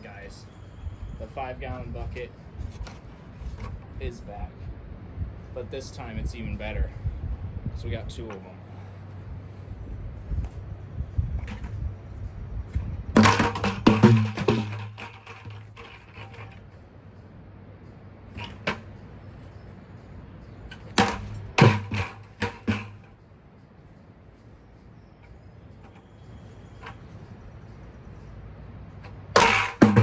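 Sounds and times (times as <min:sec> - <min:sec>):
plastic buckets being smashed: 0:13.2 - 0:16.6, 0:20.8 - 0:23.1, 0:29.4 - 0:30.0.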